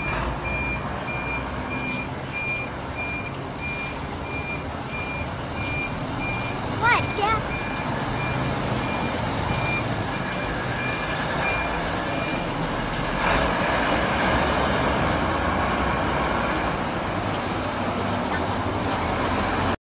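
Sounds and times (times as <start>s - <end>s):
reversing alarm beeping: 0.0s - 12.6s.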